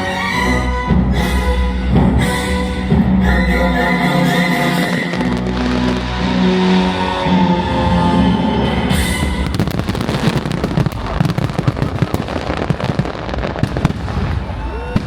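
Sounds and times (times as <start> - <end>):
show music: 0.0 - 15.0
firework bangs and crackles: 4.6 - 7.7, 8.9 - 15.0.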